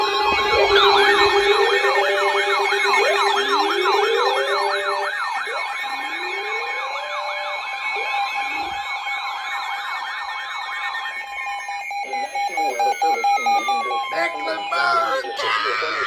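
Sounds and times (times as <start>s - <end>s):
electronic sirens yelping and wailing: 0.0s - 16.0s.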